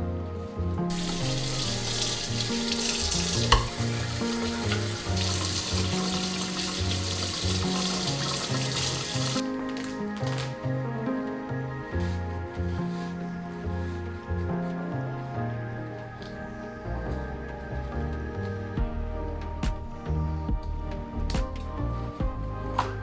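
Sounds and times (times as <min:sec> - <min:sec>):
soft background music: 0:00.0 - 0:23.0
water running from a tap: 0:00.9 - 0:09.4.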